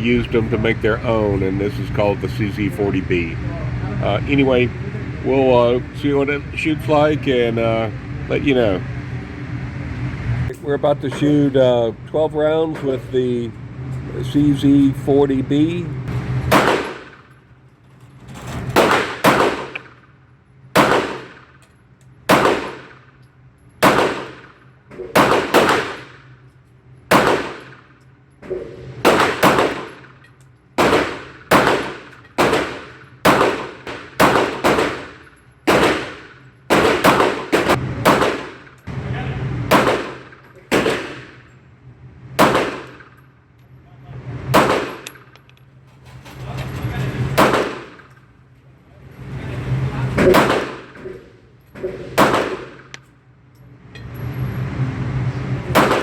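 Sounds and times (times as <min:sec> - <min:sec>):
pistol shots with echo: 0:16.5 - 0:17.3, 0:18.7 - 0:20.1, 0:20.8 - 0:21.6, 0:22.3 - 0:23.2, 0:23.8 - 0:26.3, 0:27.1 - 0:28.0, 0:29.0 - 0:30.2, 0:30.8 - 0:38.8, 0:39.7 - 0:41.5, 0:42.4 - 0:43.2, 0:44.5 - 0:45.3, 0:47.4 - 0:48.1, 0:50.2 - 0:51.1, 0:52.0 - 0:52.9, 0:55.7 - 0:56.0.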